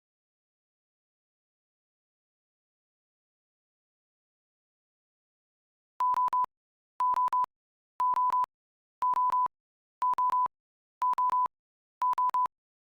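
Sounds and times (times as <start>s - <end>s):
electronic timer alarm beeps: 6.0s - 12.5s.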